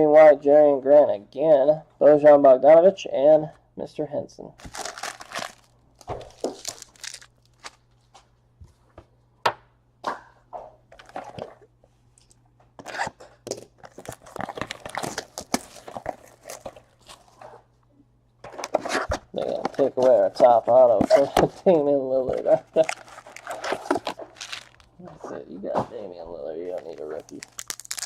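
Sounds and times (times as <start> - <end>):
cards rustling and clicking: 4.6 - 7.8, 22.3 - 24.9, 26.6 - 28.0
card pack wrapper crinkling: 4.6 - 7.9, 13.5 - 17.3, 22.5 - 25.0, 26.6 - 28.0.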